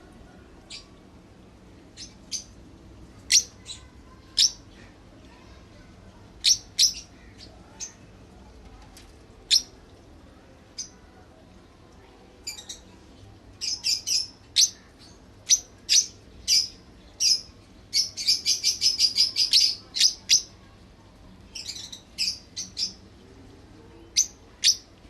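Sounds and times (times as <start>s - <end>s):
lovebirds chirping: 6.4s - 8.0s, 13.6s - 20.8s, 21.5s - 23.0s.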